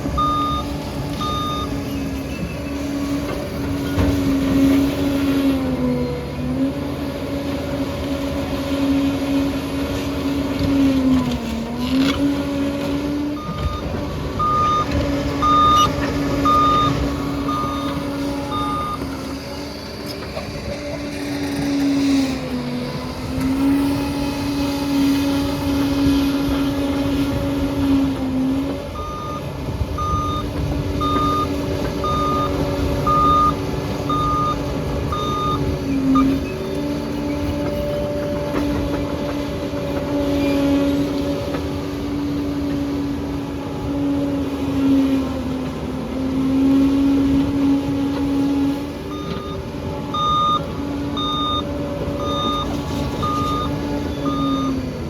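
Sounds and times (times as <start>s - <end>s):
reversing alarm beeping: 0.0s - 2.9s, 13.3s - 19.6s, 28.9s - 36.8s, 49.1s - 55.0s
bulldozer diesel engine: 0.0s - 55.0s.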